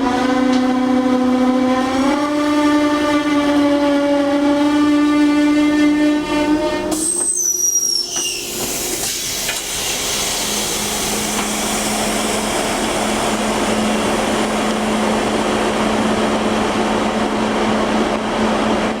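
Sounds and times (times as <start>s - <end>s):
brakes squealing: 6.9s - 12.3s.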